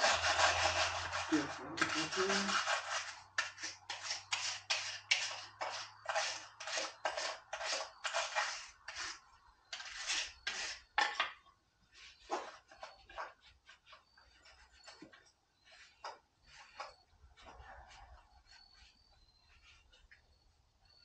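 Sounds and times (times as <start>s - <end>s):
scrubbing strokes on chainsaw: 0.0s - 9.2s.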